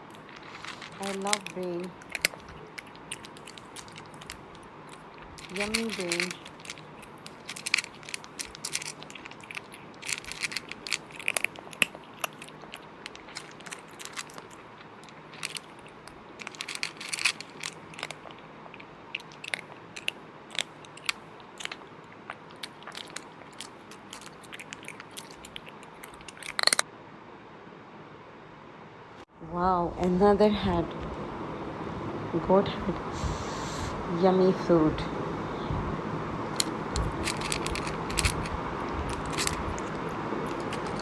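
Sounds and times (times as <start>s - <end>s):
chewing and smacking: 0.0s - 26.8s, 36.5s - 41.0s.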